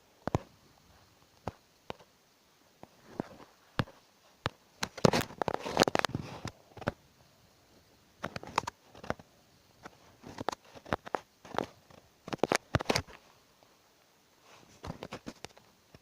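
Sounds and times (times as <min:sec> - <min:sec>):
objects being handled: 0:02.8 - 0:07.0, 0:09.8 - 0:13.3, 0:14.5 - 0:16.0.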